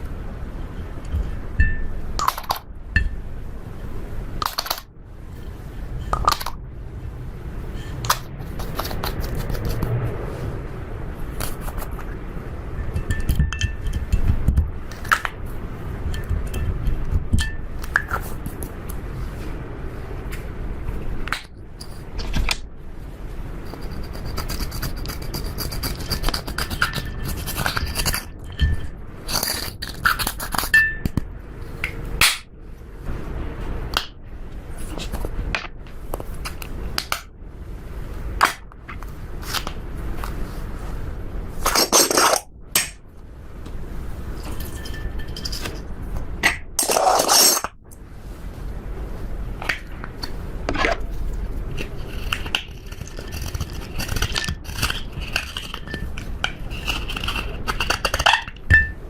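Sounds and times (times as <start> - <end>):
crackly scrapes: 7.6 - 12.2, 17.8 - 21.1, 23.5 - 30.7, 34.6 - 36.9, 37.7 - 42.5, 46.8 - 58.7.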